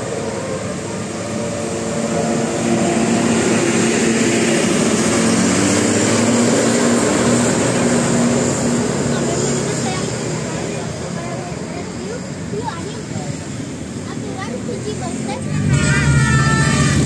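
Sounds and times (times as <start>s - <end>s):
vehicle driving past: 0.0s - 11.1s.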